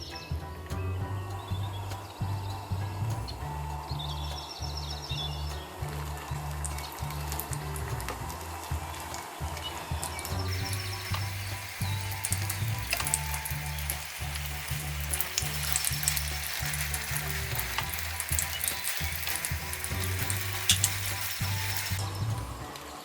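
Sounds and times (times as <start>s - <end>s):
background music with bass line: 0.0s - 23.0s
pastry sizzling in a pan: 10.4s - 22.0s.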